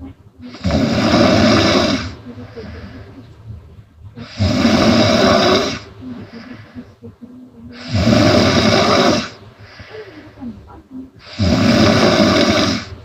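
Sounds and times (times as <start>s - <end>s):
woman snoring loudly: 0.4s - 3.0s, 4.2s - 6.6s, 7.7s - 10.1s, 11.2s - 13.0s.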